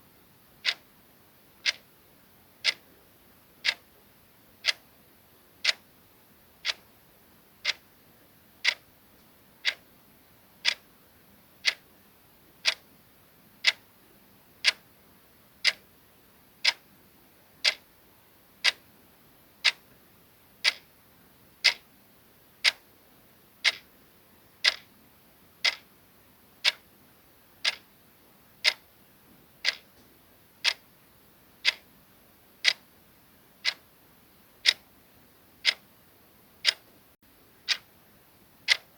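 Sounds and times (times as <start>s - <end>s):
clock ticking: 0.6s - 0.8s, 1.6s - 1.8s, 2.6s - 2.8s, 3.6s - 3.8s, 4.6s - 4.8s, 5.6s - 5.8s, 6.6s - 6.8s, 7.6s - 7.8s, 8.6s - 8.8s, 9.6s - 9.9s, 10.6s - 10.8s, 11.6s - 11.8s, 12.6s - 12.8s, 13.6s - 13.8s, 14.6s - 14.8s, 15.6s - 15.8s, 16.6s - 16.8s, 17.6s - 17.8s, 18.6s - 18.8s, 19.6s - 19.8s, 20.6s - 20.9s, 21.6s - 21.8s, 22.6s - 22.8s, 23.6s - 23.9s, 24.6s - 24.9s, 25.6s - 25.9s, 26.6s - 26.9s, 27.6s - 27.8s, 28.6s - 28.9s, 29.6s - 30.0s, 30.6s - 30.8s, 31.6s - 31.9s, 32.6s - 32.8s, 33.6s - 33.9s, 34.6s - 34.9s, 35.6s - 35.8s, 36.6s - 36.9s, 37.6s - 37.9s, 38.7s - 38.9s.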